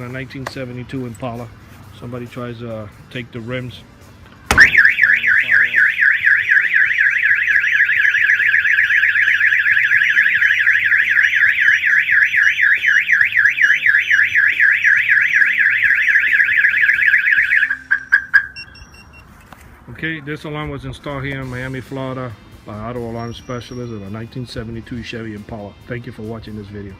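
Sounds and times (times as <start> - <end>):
car alarm siren warbling: 4.5 - 19.0
car alarm chirps: 4.5 - 19.4, 23.1 - 24.3.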